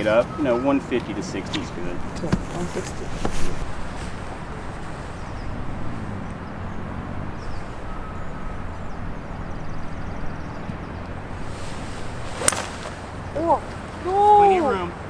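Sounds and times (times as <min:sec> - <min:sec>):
wind buffeting microphone: 0:00.0 - 0:15.0
faint bird chirps: 0:04.5 - 0:14.0.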